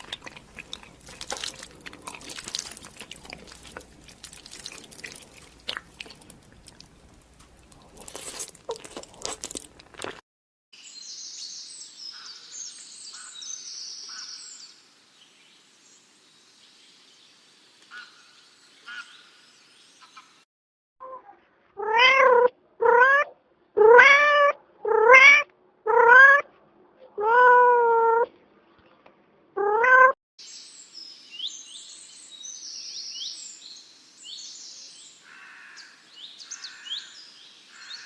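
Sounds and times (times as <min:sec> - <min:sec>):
meow-like animal calls: 0:21.8 - 0:26.5, 0:27.2 - 0:28.3, 0:29.6 - 0:30.2.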